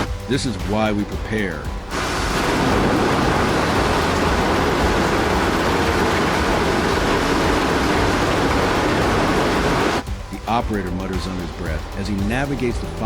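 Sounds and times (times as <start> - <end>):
heavy vehicles running: 1.9 - 10.0.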